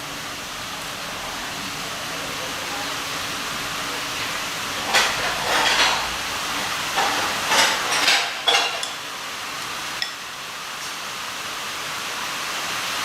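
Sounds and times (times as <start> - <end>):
dishes clinking and scraping: 4.8 - 9.0, 10.0 - 10.2.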